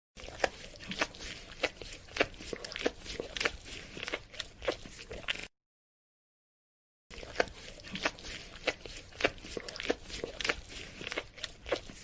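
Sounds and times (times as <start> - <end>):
dog licking: 0.2 - 5.5, 7.1 - 12.0.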